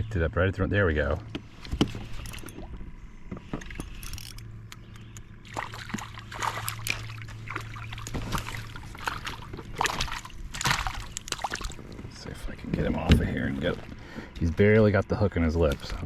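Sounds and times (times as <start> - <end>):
water splashing and dripping: 5.4 - 12.1.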